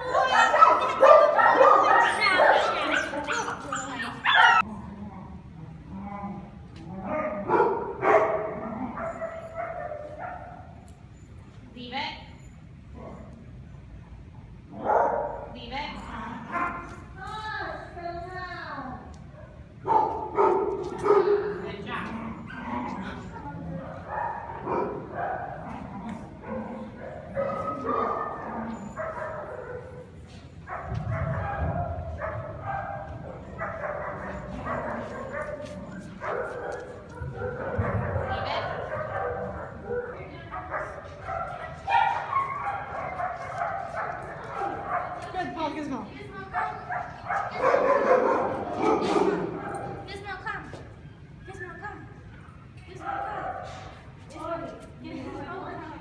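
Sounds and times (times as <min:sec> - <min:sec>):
dogs barking: 0:00.0 - 0:04.7, 0:07.0 - 0:10.8, 0:14.7 - 0:15.6, 0:19.3 - 0:45.6, 0:46.3 - 0:50.1, 0:52.4 - 0:54.1
dogs whining and yipping: 0:00.0 - 0:04.7, 0:26.4 - 0:44.7.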